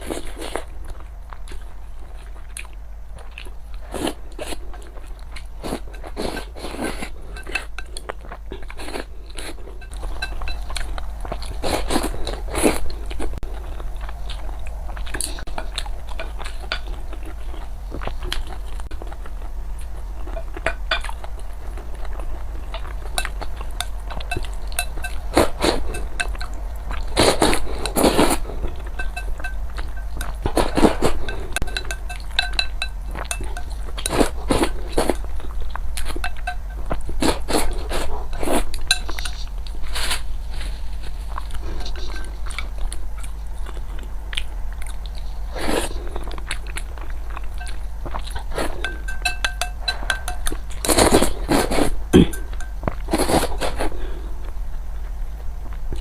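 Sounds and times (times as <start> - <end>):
chewing and crunching food: 0.0 - 56.0
utensils clinking against dishes: 5.7 - 12.4, 22.8 - 39.5, 41.5 - 42.8, 47.4 - 53.8.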